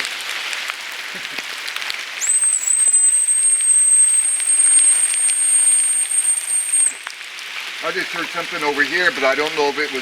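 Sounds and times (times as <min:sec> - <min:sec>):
rain falling: 0:00.0 - 0:10.0
high dog whistle tone: 0:02.2 - 0:07.2.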